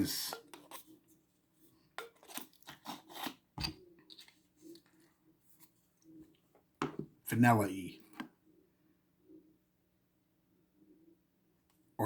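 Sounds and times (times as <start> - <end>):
faint handling sounds: 0.0 - 7.1.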